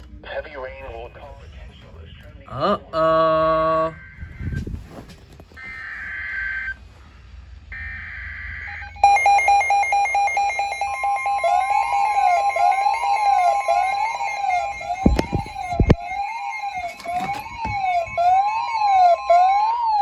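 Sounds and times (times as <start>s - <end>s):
loud pulsing alarm tone: 7.7s - 20.0s
rising and falling siren tone: 7.7s - 20.0s
steady higher tone: 8.7s - 17.6s.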